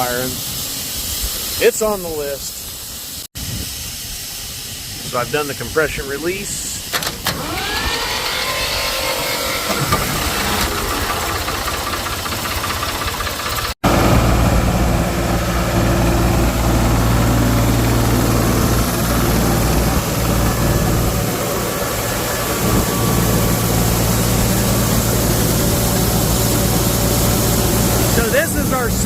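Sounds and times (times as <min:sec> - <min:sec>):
tractor diesel engine idling: 0:09.2 - 0:29.0.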